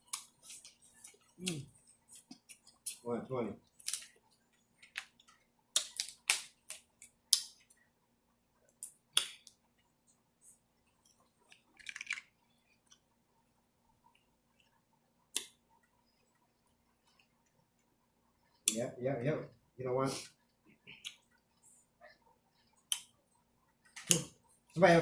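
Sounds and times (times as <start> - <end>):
mouth eating sounds: 0.0 - 3.0
seafood shells cracking: 3.7 - 4.2, 5.8 - 7.6, 11.6 - 12.3.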